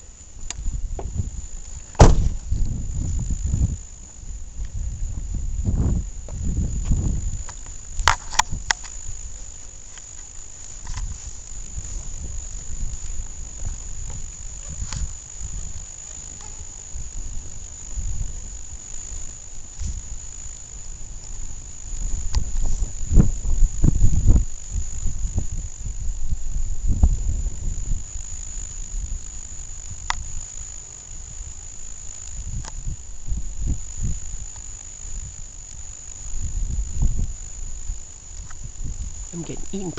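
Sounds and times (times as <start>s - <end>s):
crickets and night insects chirping: 0.0s - 39.9s
sharp clicks: 7.4s - 9.0s.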